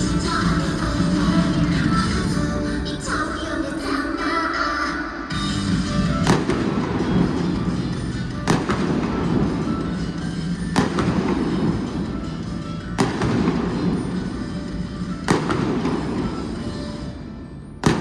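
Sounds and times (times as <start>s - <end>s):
music over sound system: 0.0s - 18.0s
fireworks bangs echoing: 6.1s - 18.0s.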